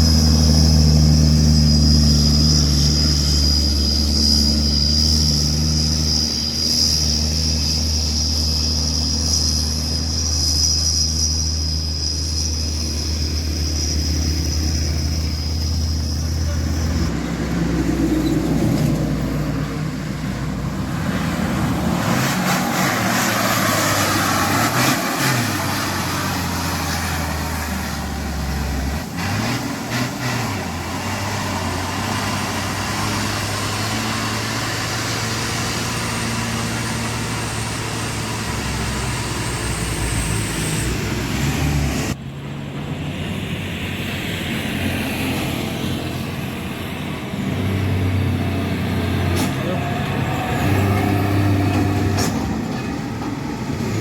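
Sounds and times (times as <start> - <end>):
diesel truck engines labouring: 0.0 - 54.0.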